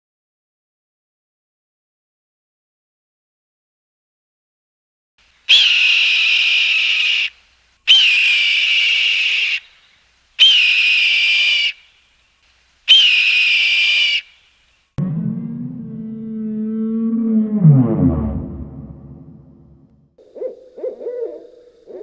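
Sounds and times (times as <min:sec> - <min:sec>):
shrill whistle blasts: 0:05.5 - 0:07.3, 0:07.9 - 0:09.7, 0:10.4 - 0:11.8, 0:12.9 - 0:14.3.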